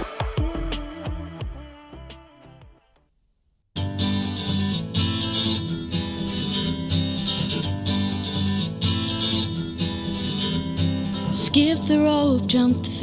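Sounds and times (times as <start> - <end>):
acoustic guitar strumming: 3.8 - 13.0.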